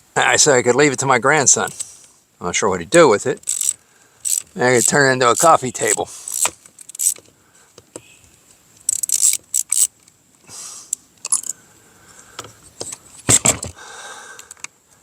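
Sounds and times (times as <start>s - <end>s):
plastic parts clicking: 3.4s - 8.0s, 8.8s - 10.2s.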